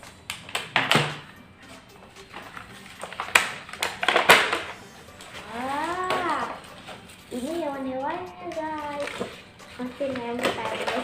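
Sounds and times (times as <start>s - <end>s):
toy packaging crackling: 2.2s - 11.0s.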